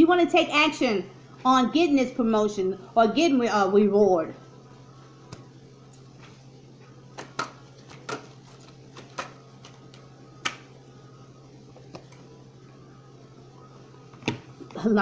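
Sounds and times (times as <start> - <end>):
steady low hum: 0.0 - 15.0
cards tapping and snapping: 7.1 - 10.7.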